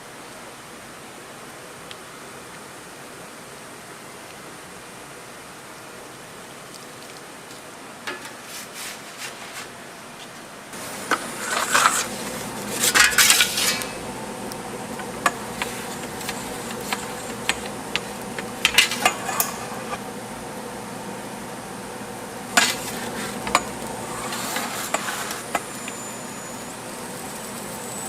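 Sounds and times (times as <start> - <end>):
steady hiss: 0.0 - 28.0
scraping and clatter: 11.0 - 14.1, 14.9 - 20.0, 22.6 - 26.2
utensils and dishes clicking: 11.0 - 20.0, 22.6 - 28.0.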